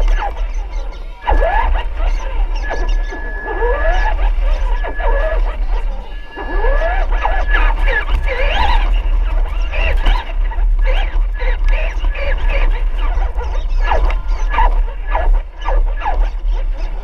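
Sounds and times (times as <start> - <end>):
crowd chattering: 0.0 - 17.0
excited shouts and squeals: 0.0 - 17.0
steady low rumble: 0.0 - 17.0.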